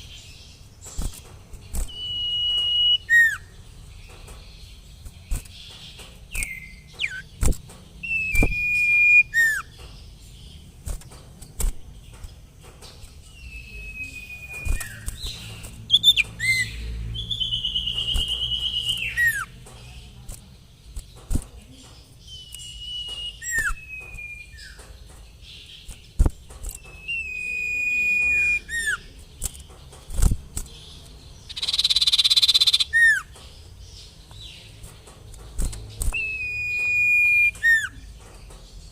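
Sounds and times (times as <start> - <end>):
bird whistling calls: 1.8 - 3.6, 8.0 - 9.7, 13.4 - 19.5, 22.3 - 24.8, 26.7 - 29.1, 31.5 - 33.3, 36.0 - 38.1
sharp clicks: 4.0 - 10.0, 10.8 - 13.2, 14.2 - 16.7, 17.4 - 33.6, 34.2 - 38.7
bird buzzy trill: 6.4 - 9.7.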